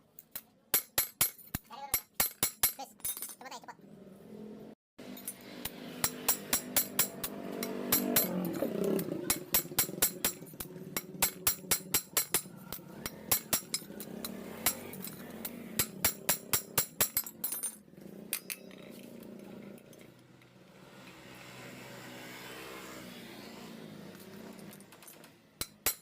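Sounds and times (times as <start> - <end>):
hand tool tapping metal: 6.0 - 17.7, 24.9 - 26.0.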